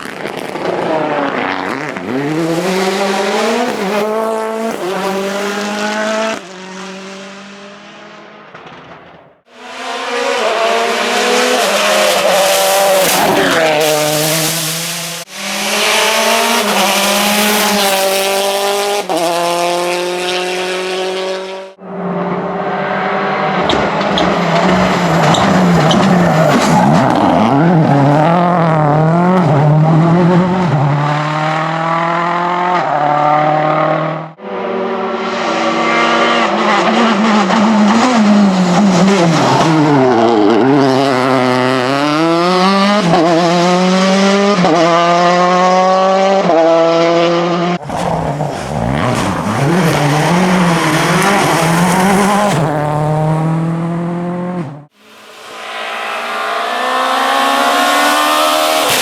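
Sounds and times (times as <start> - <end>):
rally car engines revving: 0.0 - 59.0.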